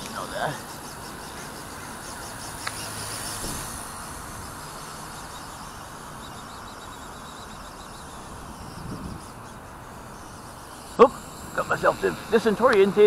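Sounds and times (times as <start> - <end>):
faint insect chirping: 0.0 - 13.0
toy helicopter motor and rotors: 0.0 - 13.0
wind noise on microphone: 2.6 - 6.2, 8.2 - 12.4.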